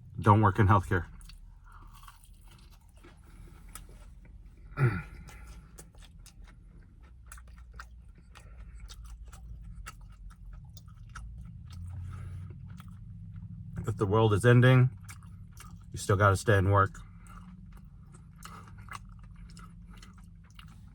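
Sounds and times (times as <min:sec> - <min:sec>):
person chewing crunchy food: 0:01.0 - 0:20.9
low vocal sound: 0:04.8 - 0:05.4.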